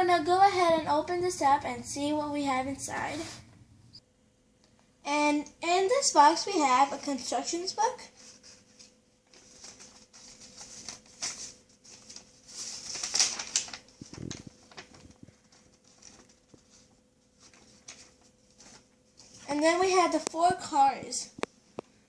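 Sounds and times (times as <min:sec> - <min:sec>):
faint steady hum: 0:00.0 - 0:22.0.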